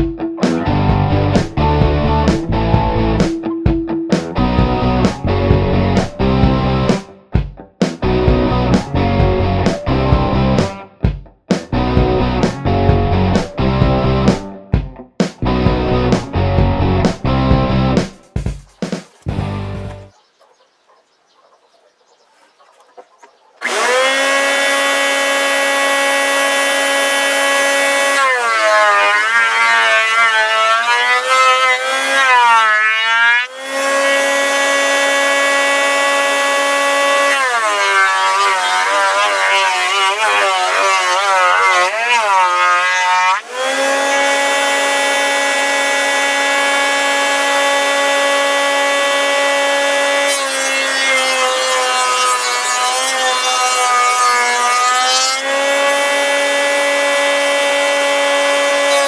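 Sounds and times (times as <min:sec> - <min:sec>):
electric wood planer whining: 0:04.4 - 0:07.1, 0:23.6 - 0:59.0.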